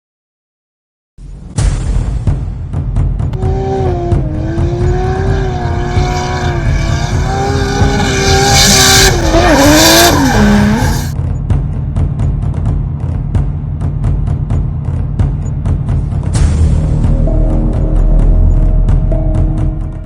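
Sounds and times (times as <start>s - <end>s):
heavy music beat: 3.4s - 11.2s
racing car engine high revs: 3.4s - 11.2s.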